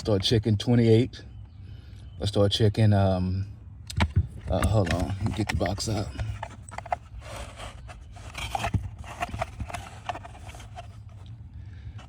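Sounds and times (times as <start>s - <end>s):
box scraping and clicking: 4.0s - 11.3s.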